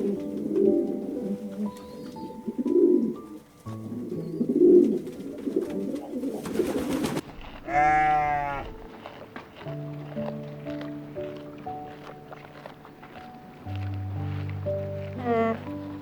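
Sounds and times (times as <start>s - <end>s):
pigeons cooing: 0.0s - 9.4s, 15.0s - 16.0s
background music: 0.0s - 16.0s.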